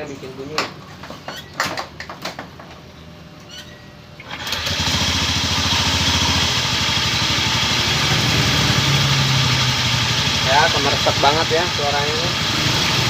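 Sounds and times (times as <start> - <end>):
scooter engine running: 4.2 - 13.0.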